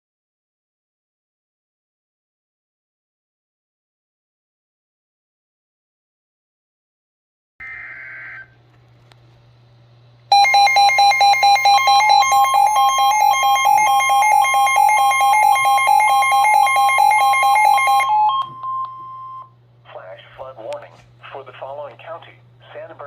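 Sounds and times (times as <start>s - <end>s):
two-tone attention alarm: 10.3s - 19.5s.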